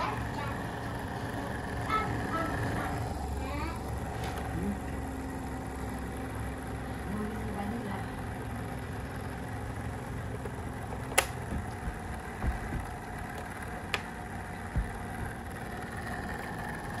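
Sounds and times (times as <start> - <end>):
fan humming: 0.0 - 17.0
sharp clicks: 10.4 - 11.8
soft low thumps: 11.4 - 13.4, 14.6 - 15.6.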